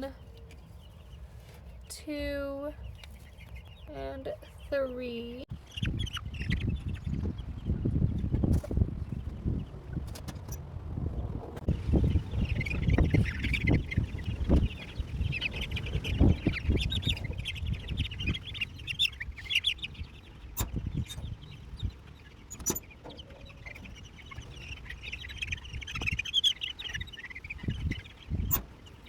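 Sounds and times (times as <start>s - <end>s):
chicks peeping: 0.0s - 29.0s
low thumps and rustling: 6.5s - 29.0s.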